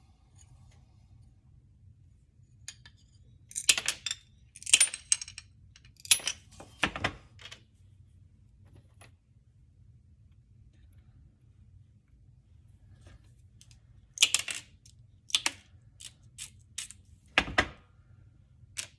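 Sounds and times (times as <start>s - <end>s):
metal tools clicking and rattling: 2.7s - 6.5s.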